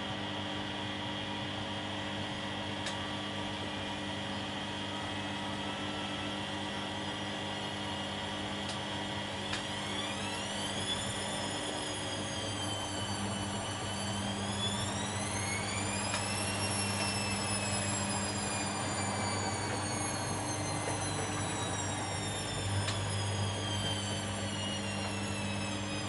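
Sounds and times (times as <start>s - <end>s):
washing machine motor whining: 8.4s - 26.0s.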